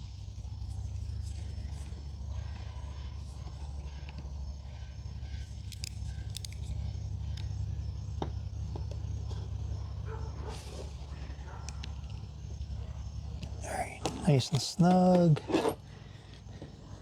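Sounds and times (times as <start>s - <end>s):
small parts clicking: 5.6s - 6.7s.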